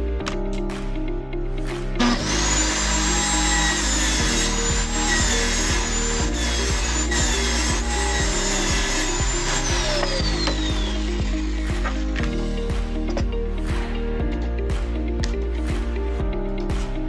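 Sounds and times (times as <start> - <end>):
background music: 0.0 - 17.0
saw cutting board: 2.0 - 12.0.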